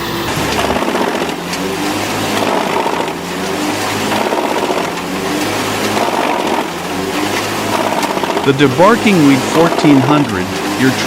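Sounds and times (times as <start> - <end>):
machine motor running under load: 0.0 - 11.0.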